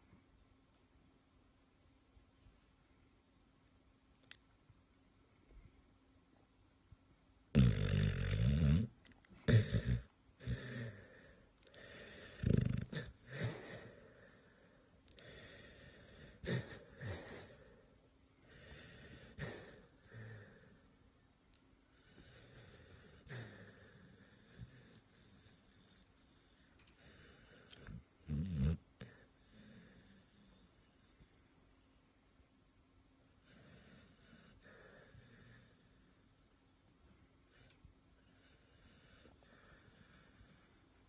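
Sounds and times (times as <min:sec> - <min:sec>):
person snoring: 0:07.6 - 0:08.9, 0:09.5 - 0:14.0.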